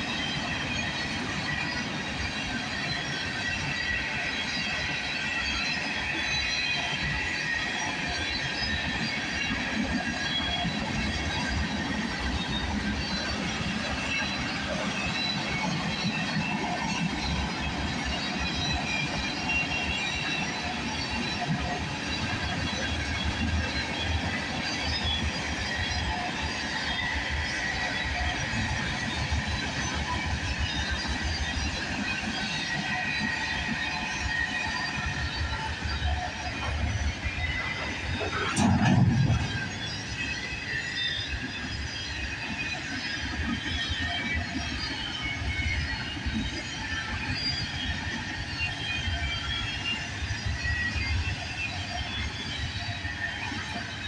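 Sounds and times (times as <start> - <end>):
freight train rumbling: 0.0 - 54.0
train wheel squeals: 0.0 - 54.0
train car clank: 37.8 - 40.0.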